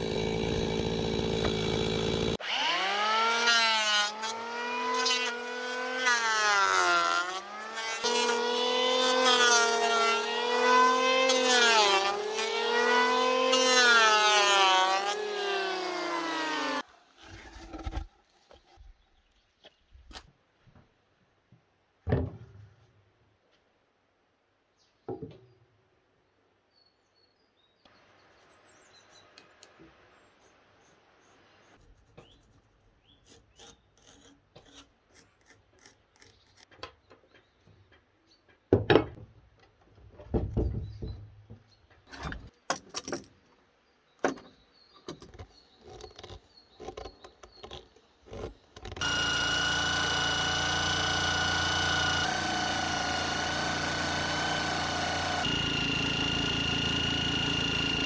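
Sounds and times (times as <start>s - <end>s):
power tool whining: 0.0s - 16.9s, 48.8s - 58.0s.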